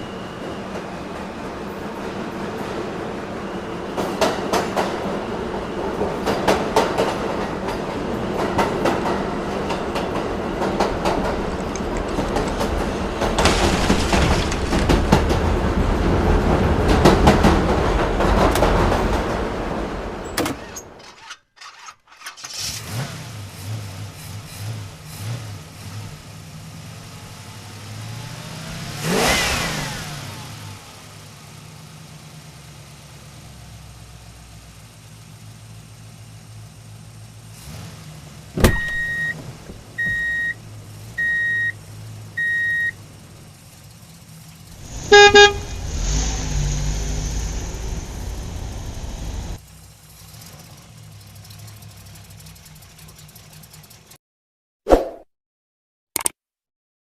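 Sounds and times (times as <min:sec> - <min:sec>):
vehicle engine hum: 0:00.0 - 0:21.1, 0:22.4 - 0:54.2
short high beeps: 0:38.8 - 0:39.4, 0:40.0 - 0:40.6, 0:42.4 - 0:42.9
vehicle passing by: 0:44.8 - 0:49.6
click: 0:56.2 - 0:56.4.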